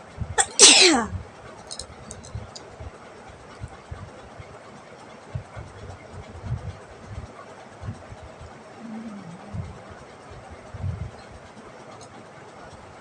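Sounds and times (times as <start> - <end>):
person sneezing: 0.4 - 1.1.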